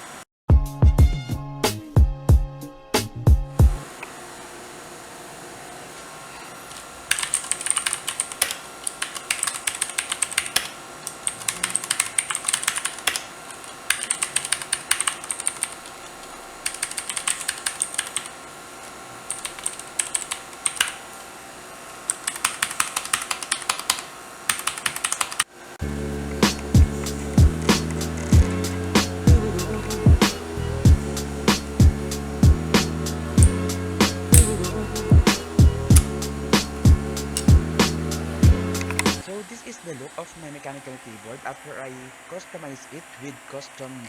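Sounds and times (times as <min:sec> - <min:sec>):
mechanical keyboard typing: 0:06.7 - 0:18.5, 0:19.3 - 0:21.0, 0:22.1 - 0:25.5, 0:33.4 - 0:33.6, 0:34.3 - 0:36.3, 0:38.7 - 0:39.2.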